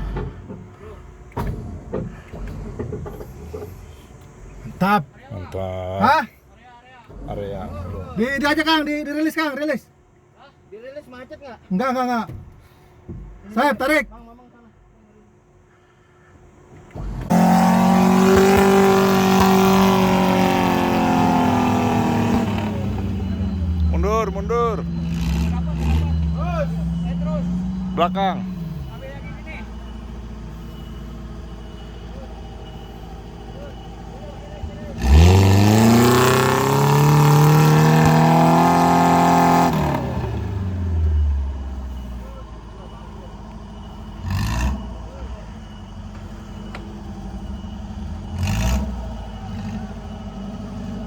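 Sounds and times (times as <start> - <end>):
engine revving hard: 17.0 - 29.8, 34.8 - 42.1, 44.1 - 45.4, 48.2 - 51.0.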